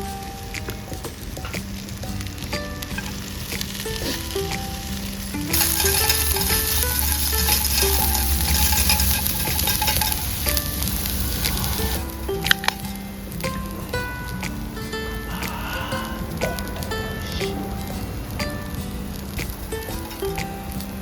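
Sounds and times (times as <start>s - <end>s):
light background music: 0.0s - 21.0s
food sizzling in a pan: 1.3s - 15.7s.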